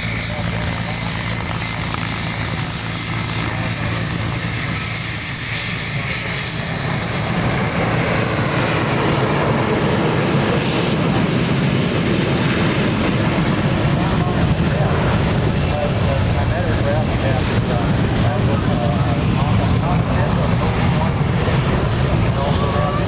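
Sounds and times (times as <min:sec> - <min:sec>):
thin high whine: 0:00.0 - 0:08.9
propeller aircraft engines rumbling: 0:00.0 - 0:23.0.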